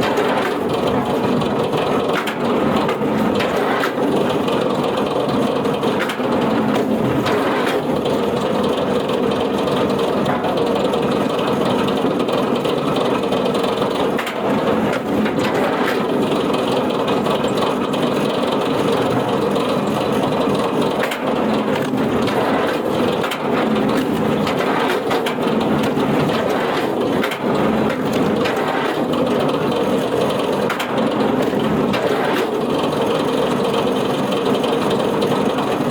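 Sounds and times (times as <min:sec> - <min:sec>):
wood-processing machine droning: 0:00.0 - 0:35.9.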